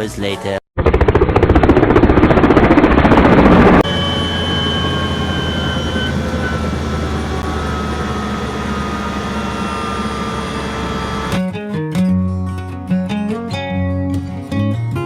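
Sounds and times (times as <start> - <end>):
aircraft engine hum: 1.8 - 11.4
steady tones: 3.4 - 11.4.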